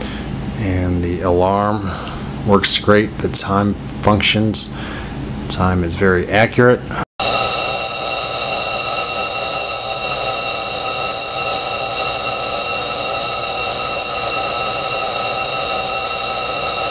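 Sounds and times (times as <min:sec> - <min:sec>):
alarm clock ringing buzz: 0:07.2 - 0:16.9.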